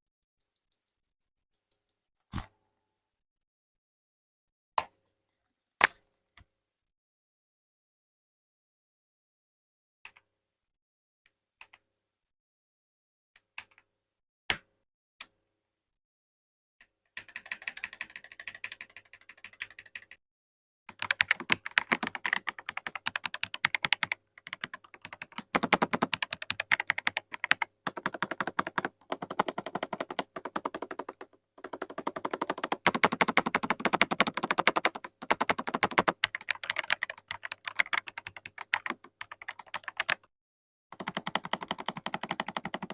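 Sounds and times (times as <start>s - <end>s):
mechanical keyboard typing: 17.2s - 20.2s, 20.9s - 40.2s, 41.0s - 42.9s.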